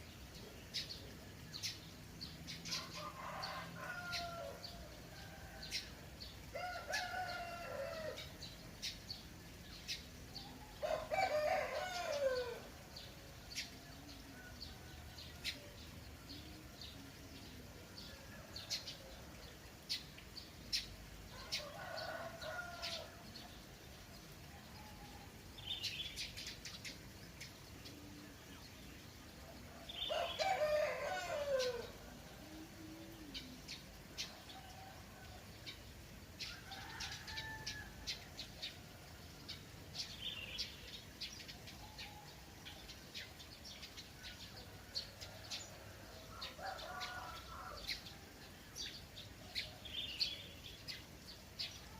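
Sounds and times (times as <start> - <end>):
rooster crowing: 2.9 - 5.7, 6.6 - 8.2, 10.8 - 12.6, 21.4 - 23.2, 30.1 - 32.0, 45.6 - 48.0.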